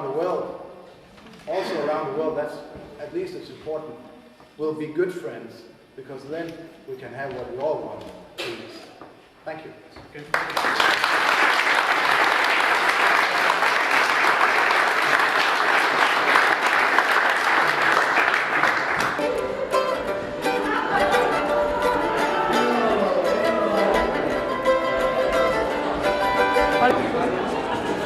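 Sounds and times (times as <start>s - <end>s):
audience applauding: 10.2s - 24.5s
plucked-string music: 19.1s - 28.0s.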